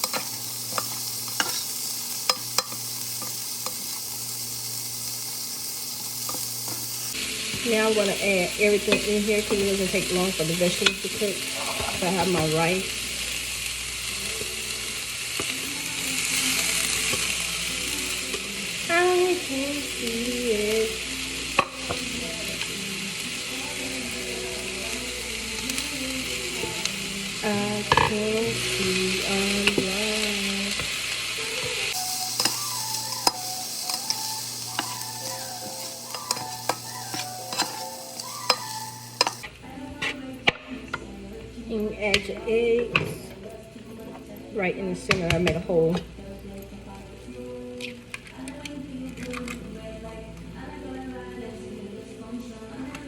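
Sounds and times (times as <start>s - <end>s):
rice sizzling in a hot pan: 0.0s - 39.5s.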